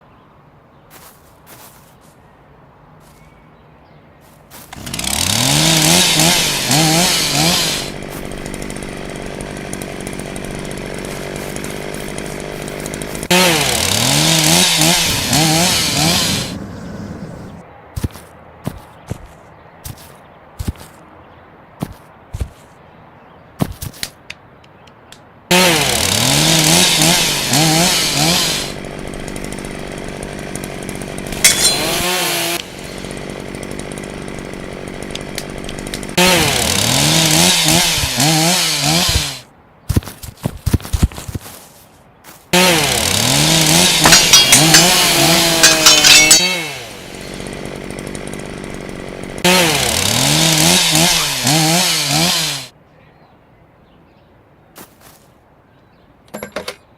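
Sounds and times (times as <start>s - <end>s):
chainsaw revving: 4.5s - 17.6s, 25.5s - 39.5s, 42.5s - 52.7s.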